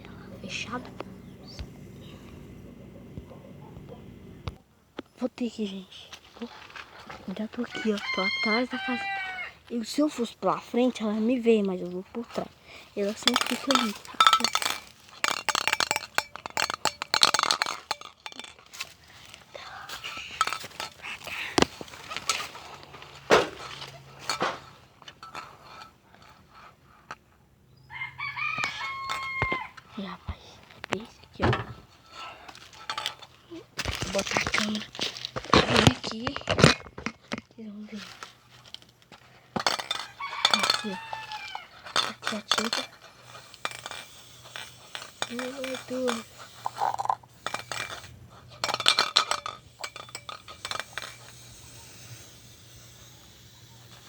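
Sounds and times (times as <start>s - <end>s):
sharp knocks and clinks: 13.0s - 19.4s, 20.0s - 22.7s, 23.3s - 25.9s, 30.9s - 32.0s, 39.6s - 51.8s.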